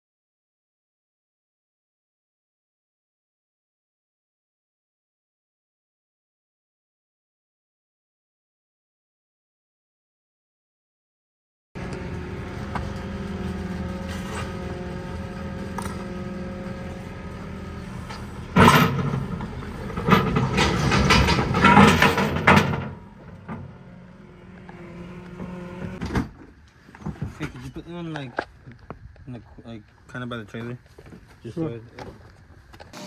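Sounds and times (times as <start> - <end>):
engine running: 11.8 - 27.6.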